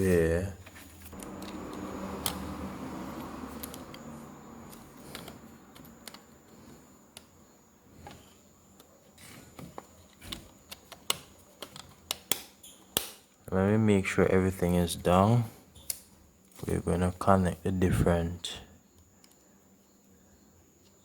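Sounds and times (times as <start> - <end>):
small parts clicking and tapping: 0.6 - 13.5, 15.7 - 16.6, 18.9 - 19.5
low steady hum: 1.0 - 8.8.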